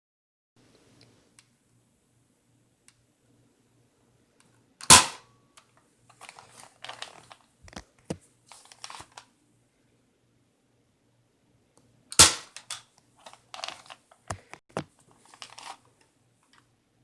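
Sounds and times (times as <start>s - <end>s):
foam dart blaster spring snap: 4.8s - 5.2s, 12.2s - 12.6s
blaster clicks and rattles: 12.2s - 12.8s.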